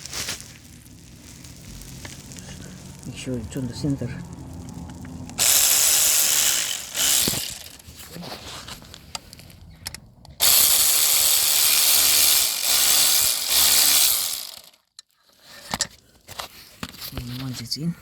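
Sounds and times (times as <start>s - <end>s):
power gun running bolts: 5.4s - 7.9s, 10.4s - 14.8s.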